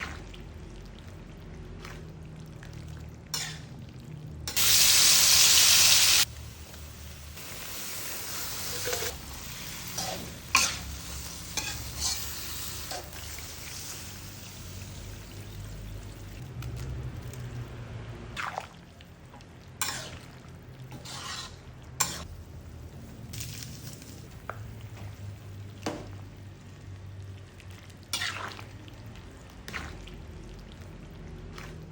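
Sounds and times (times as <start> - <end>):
food sizzling in a pan: 4.5 - 16.4, 19.8 - 25.6.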